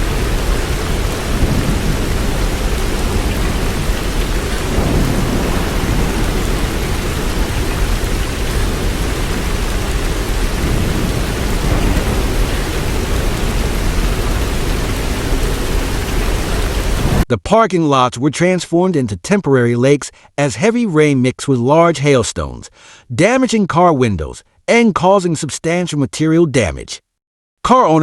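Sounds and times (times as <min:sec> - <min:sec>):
low rumble: 0:00.0 - 0:17.2
heavy rain and hail: 0:00.0 - 0:17.3.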